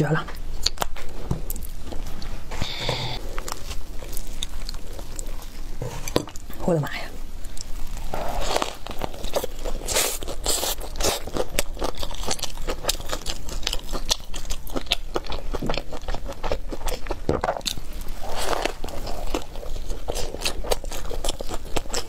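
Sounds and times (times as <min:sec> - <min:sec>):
crunchy biting and chewing: 0:07.5 - 0:22.0.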